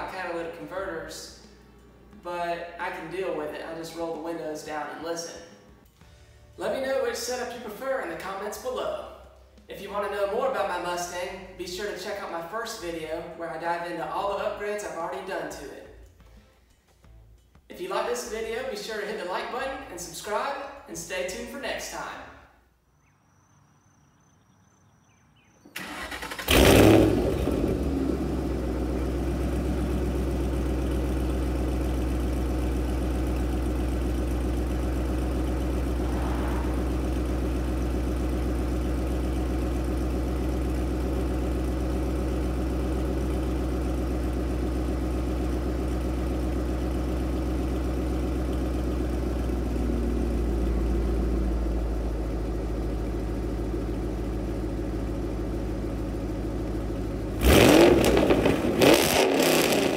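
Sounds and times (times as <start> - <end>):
car engine starting and idling: 23.0 - 59.9
engine revving: 25.8 - 30.2, 34.0 - 39.6, 57.2 - 59.9.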